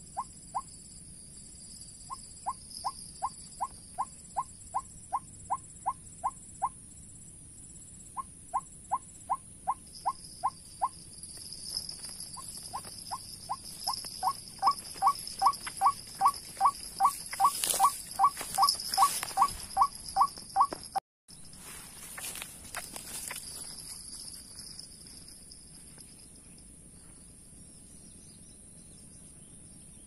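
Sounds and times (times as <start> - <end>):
lower insect buzz: 0.0 - 21.0
high insect buzz: 8.8 - 26.3.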